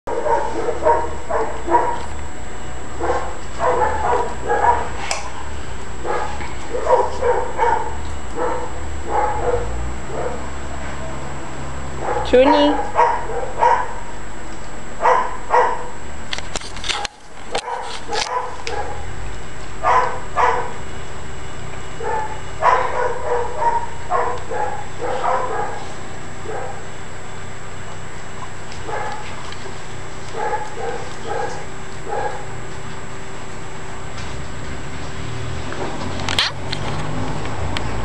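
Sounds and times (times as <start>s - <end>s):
dogs barking and yipping: 0.1s - 2.1s, 3.0s - 5.1s, 6.0s - 10.6s, 12.0s - 14.0s, 15.0s - 15.9s, 16.9s - 19.0s, 19.8s - 20.8s, 22.0s - 26.9s, 28.8s - 29.4s, 30.3s - 32.6s.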